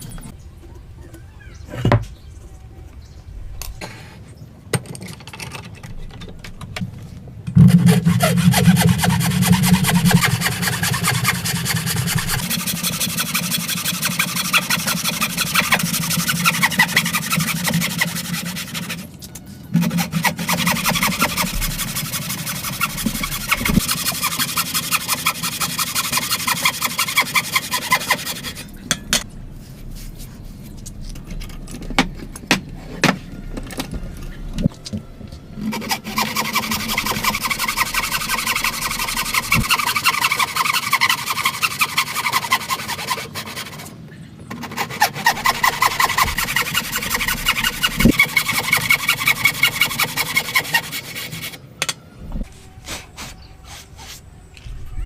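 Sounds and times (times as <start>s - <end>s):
hand tool scraping wood: 7.6s - 19.1s, 19.8s - 29.3s, 35.6s - 51.6s.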